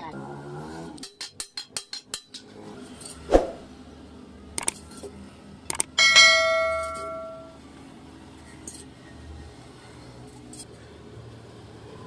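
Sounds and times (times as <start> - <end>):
hammer striking metal: 5.8 - 7.6.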